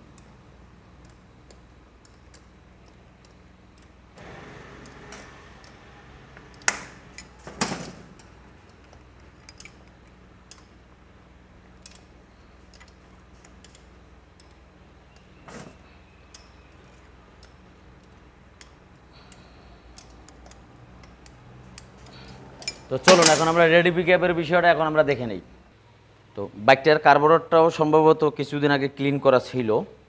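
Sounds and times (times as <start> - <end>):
hand tools ticking on metal: 16.2 - 16.8, 17.4 - 23.5
loud metal clanks: 22.6 - 23.7.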